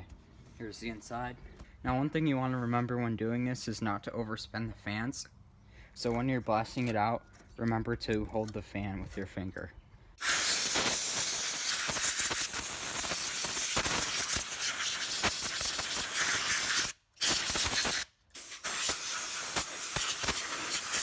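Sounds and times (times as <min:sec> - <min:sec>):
compressed air hissing: 0:10.2 - 0:21.0.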